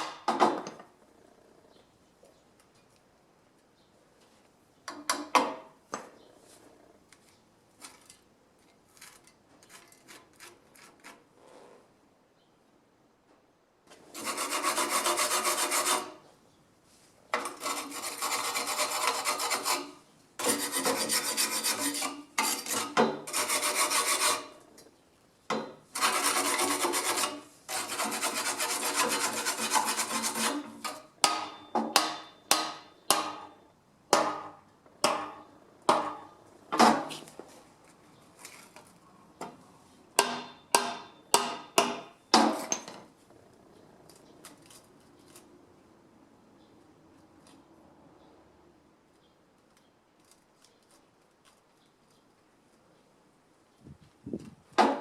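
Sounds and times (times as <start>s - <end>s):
hand tool scraping metal pipe: 14.1s - 16.2s, 17.4s - 24.6s, 25.9s - 33.4s.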